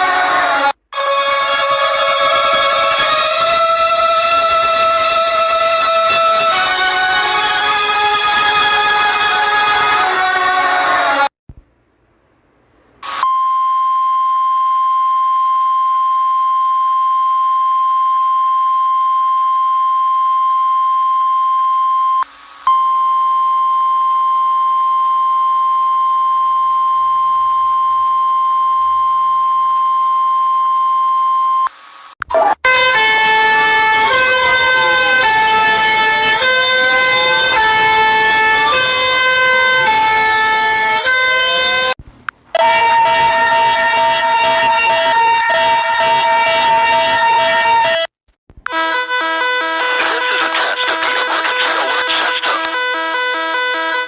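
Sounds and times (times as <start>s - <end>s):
steady electronic alarm tone: 23.7s - 31.1s, 32.6s - 42.0s, 42.6s - 48.1s
rising and falling pitch sweeps: 26.2s - 29.4s, 42.6s - 48.0s.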